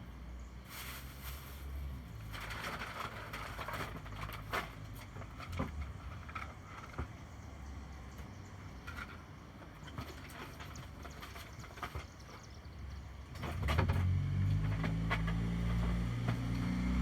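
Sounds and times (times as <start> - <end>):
rustling and handling noise: 0.7 - 7.2.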